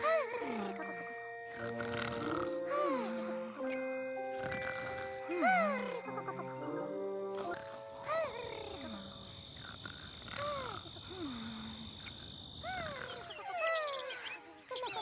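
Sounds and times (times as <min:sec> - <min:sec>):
cartoon squeaky snores: 0:01.5 - 0:02.6, 0:04.4 - 0:06.1, 0:09.6 - 0:11.6, 0:12.6 - 0:14.1.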